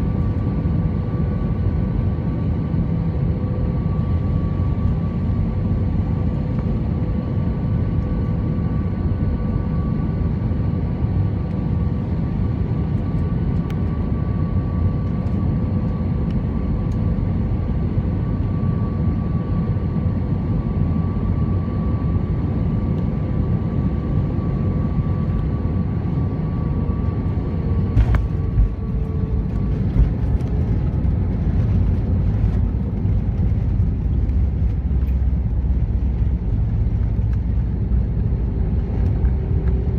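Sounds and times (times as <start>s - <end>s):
deep rumble of engines and airflow: 0.0s - 39.9s
thin engine whine: 20.2s - 39.9s.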